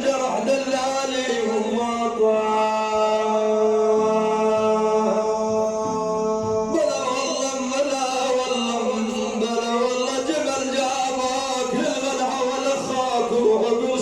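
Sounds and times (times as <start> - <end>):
man singing in chanting style: 0.0 - 14.0
music: 3.9 - 14.0.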